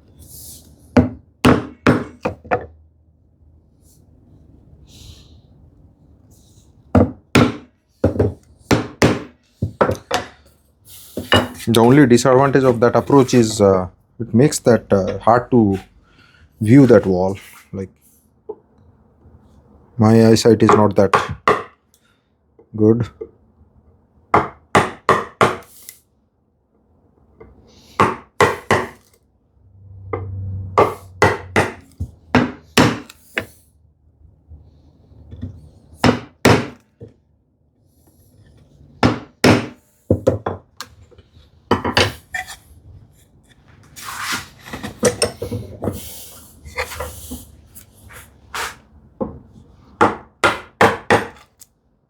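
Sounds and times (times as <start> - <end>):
chisel knocking wood: 1.0 - 2.7, 6.9 - 10.4, 20.7 - 21.7, 24.3 - 25.7, 28.0 - 29.0, 30.8 - 33.2, 36.0 - 37.1, 39.0 - 40.6, 50.0 - 51.5.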